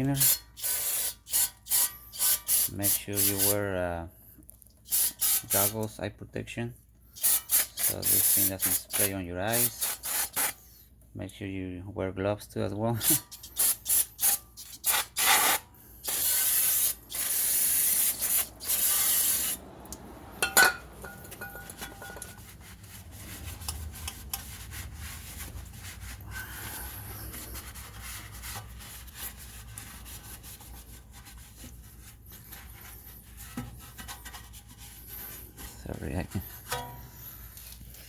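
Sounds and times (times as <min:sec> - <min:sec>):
scrubbing brake parts: 0:12.8 - 0:38.0.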